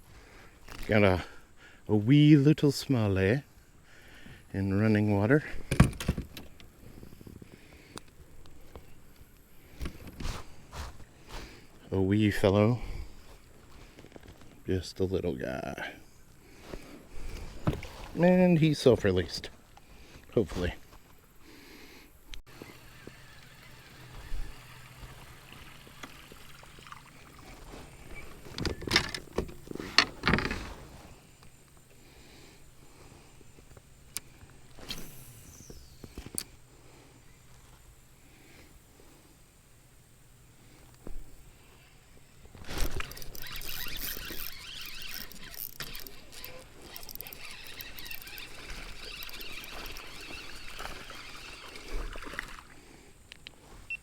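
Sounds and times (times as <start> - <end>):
scuffs: 10.2 - 11.8
water splashing and trickling: 22.5 - 28.6, 42.8 - 53.0.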